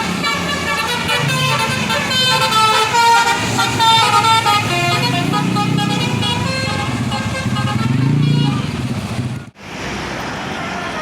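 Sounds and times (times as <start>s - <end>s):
bus engine running: 0.0s - 11.0s
multi-tone bus air horn: 0.1s - 8.8s.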